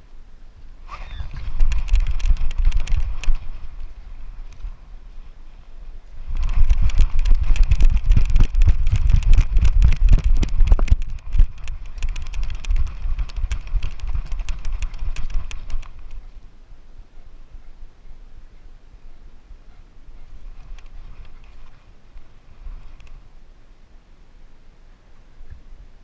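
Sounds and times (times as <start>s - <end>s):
heavy low rumble: 1.4s - 18.2s.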